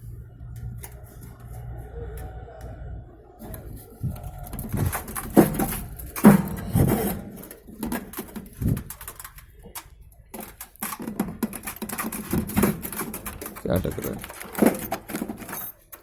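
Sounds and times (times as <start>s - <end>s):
metal parts knocking and scraping: 3.4s - 16.0s
loud thuds: 4.0s - 9.0s.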